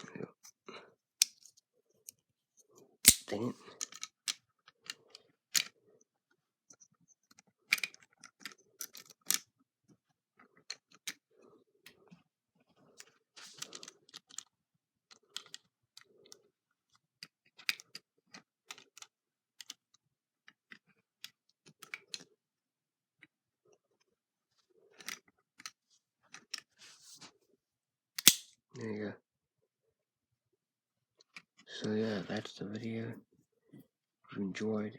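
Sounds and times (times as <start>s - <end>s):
knife clicks and snaps: 3.1s - 3.4s, 28.2s - 28.5s.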